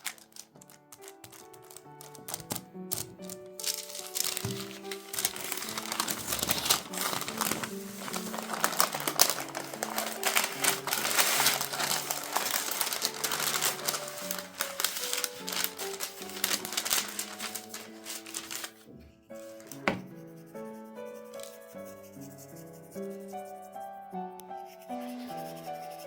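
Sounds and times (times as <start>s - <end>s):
slow background music: 0.0s - 26.0s
hands rustling: 3.2s - 20.1s.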